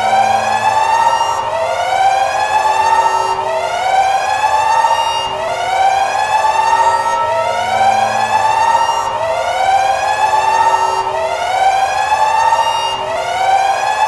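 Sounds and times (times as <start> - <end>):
steady underlying tone: 0.0 - 4.1, 5.3 - 12.3
alarm siren wailing: 0.0 - 14.0.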